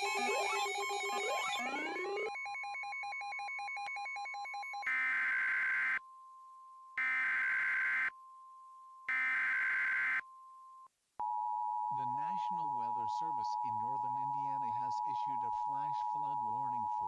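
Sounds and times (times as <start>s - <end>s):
steady alert tone: 0.0s - 2.3s
rapid pulsing beep: 0.0s - 3.0s
long buzzy beeps: 0.0s - 3.2s.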